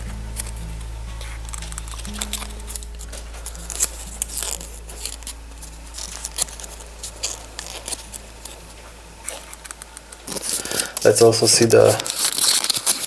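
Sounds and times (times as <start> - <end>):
low steady hum: 0.0 - 13.0
wrapping crinkling: 1.2 - 13.0
plastic toy pieces clicking: 11.8 - 13.0.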